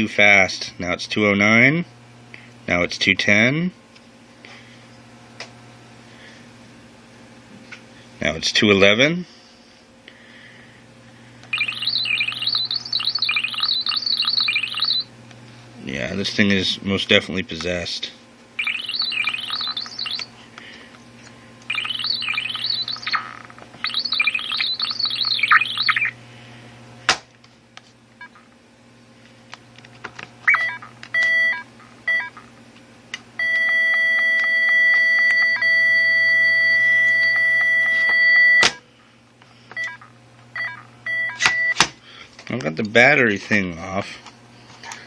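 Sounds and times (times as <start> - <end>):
short beeps: 11.5 - 15.1, 18.6 - 20.3, 21.7 - 26.1
steady high beep: 11.5 - 15.1, 18.6 - 20.3, 21.7 - 23.2, 23.8 - 26.1
warbling chirping alarm tones: 11.5 - 15.1, 18.6 - 20.4, 21.6 - 26.2, 30.4 - 32.5, 33.4 - 38.7, 39.8 - 41.8.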